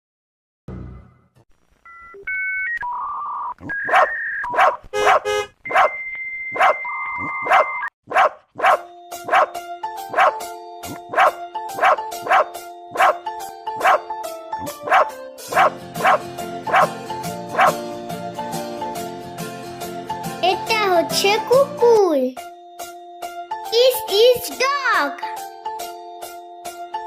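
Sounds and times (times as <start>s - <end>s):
dog barking: 3.9s - 6.0s, 6.6s - 6.8s, 7.4s - 9.5s, 10.1s - 10.4s, 11.1s - 13.2s, 13.8s - 14.0s, 14.8s - 16.9s, 17.5s - 17.8s.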